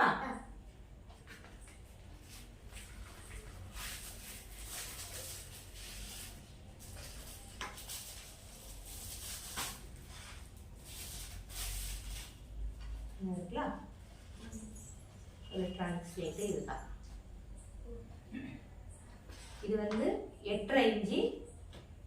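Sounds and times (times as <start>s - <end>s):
packaging rustling and scraping: 2.2s - 12.5s.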